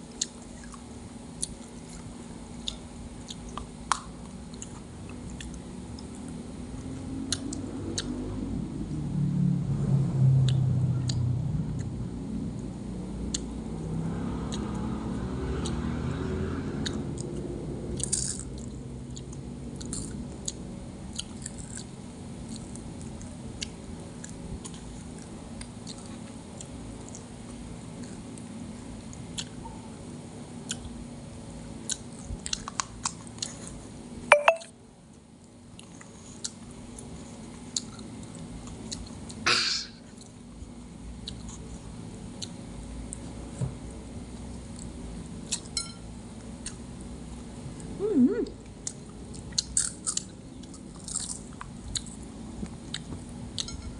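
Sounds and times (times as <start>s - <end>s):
crunchy chewing: 0.1s - 6.4s, 18.0s - 28.5s, 31.8s - 33.8s, 35.4s - 39.4s, 40.0s - 45.8s, 48.8s - 53.8s.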